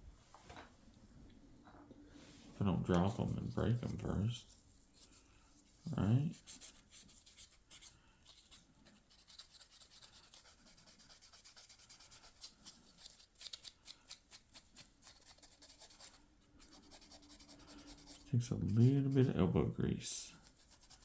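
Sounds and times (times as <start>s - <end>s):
scratchy rubbing on wood: 5.9s - 19.6s, 20.3s - 21.0s.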